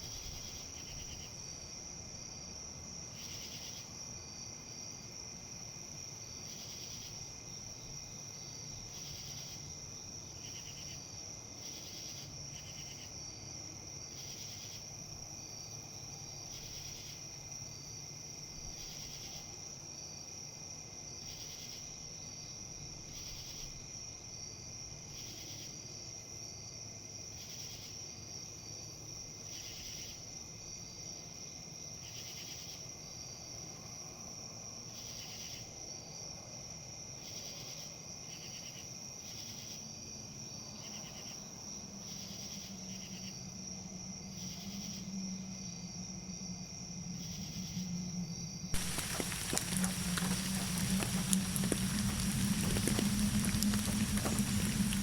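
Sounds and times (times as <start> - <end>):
insects chirping: 40.8 - 55.0
pulsing insect call: 43.8 - 55.0
low background rumble: 48.0 - 55.0.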